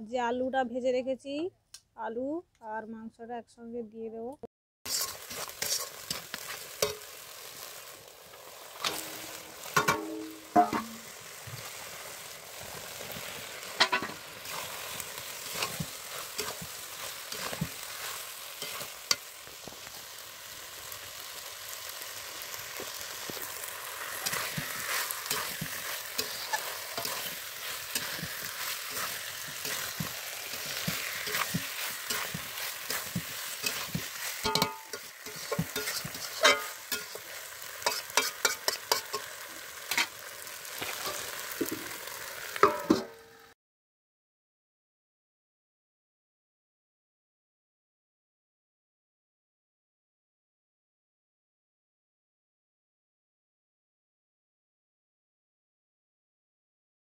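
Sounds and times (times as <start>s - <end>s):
spatula stirring and scraping: 4.9s - 43.1s
paste sizzling in hot oil: 4.9s - 43.5s.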